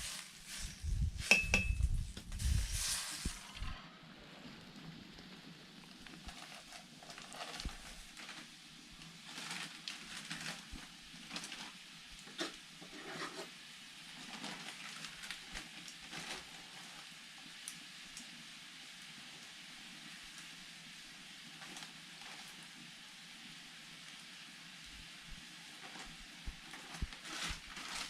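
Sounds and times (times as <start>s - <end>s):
cooking pot being stirred: 0.0s - 3.8s, 11.4s - 13.6s
faint steady hiss: 0.0s - 28.0s.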